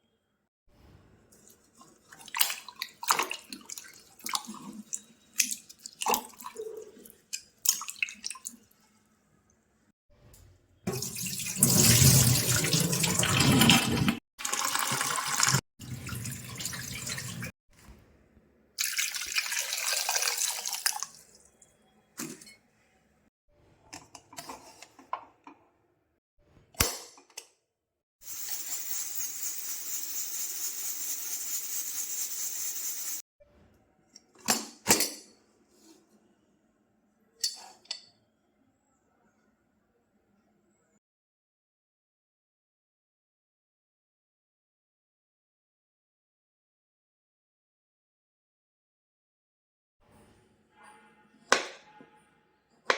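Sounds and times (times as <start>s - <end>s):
tap water running into sink: 10.9s - 17.5s.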